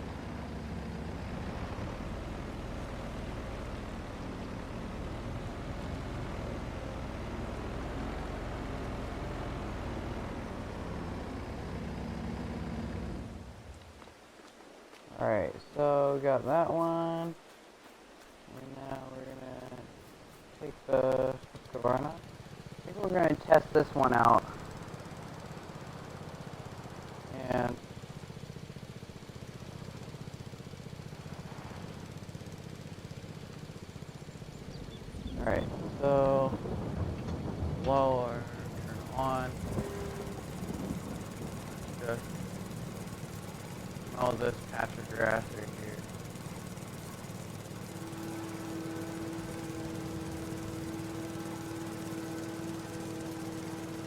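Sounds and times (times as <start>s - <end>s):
lawn mower engine running: 0.0s - 14.0s, 18.1s - 54.0s
steady whine: 15.2s - 27.9s, 34.0s - 54.0s.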